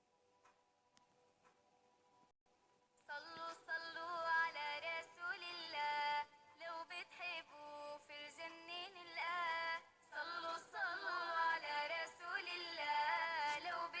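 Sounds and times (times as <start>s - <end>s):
woman singing unaccompanied: 3.0s - 14.0s.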